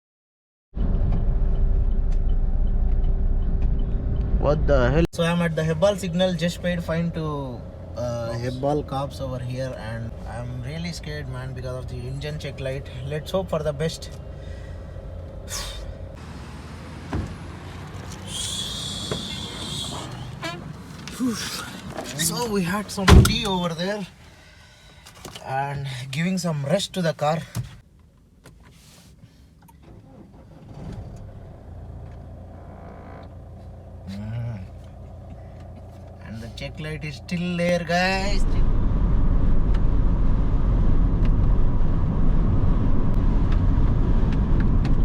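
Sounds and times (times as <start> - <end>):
engine and road rumble: 0.7 - 45.0
hiss: 18.2 - 20.1.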